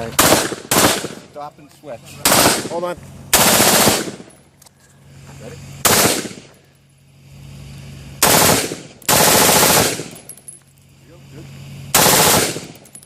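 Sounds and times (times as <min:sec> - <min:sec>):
automatic gunfire bursts: 0:00.2 - 0:01.2, 0:02.2 - 0:04.3, 0:05.8 - 0:06.5, 0:08.2 - 0:10.2, 0:11.9 - 0:12.8.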